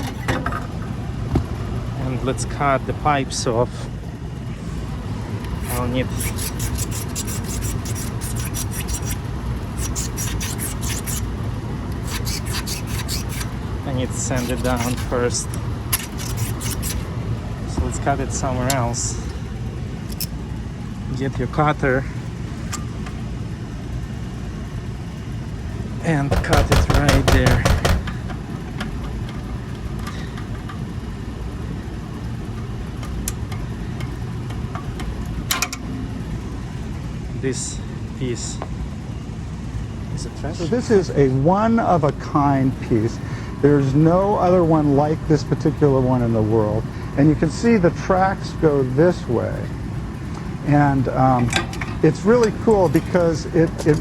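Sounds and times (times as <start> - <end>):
low rumble of machinery: 0.0 - 54.0
tubing cutter rasp: 5.5 - 11.3, 11.9 - 17.1, 26.3 - 28.2
pipe being sanded by hand: 5.6 - 11.3, 12.0 - 17.1.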